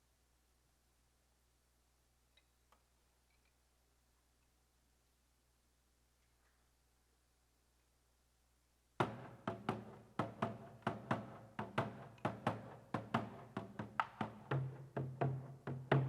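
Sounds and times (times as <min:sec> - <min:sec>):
traditional drums playing rhythm: 0:09.0 - 0:16.0.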